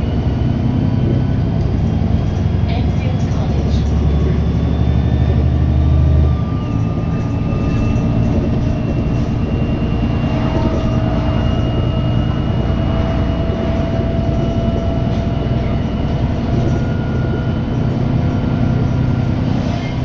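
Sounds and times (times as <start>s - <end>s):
bus engine drone: 0.0s - 20.0s
lower whine: 0.0s - 20.0s
high whine: 4.7s - 20.0s.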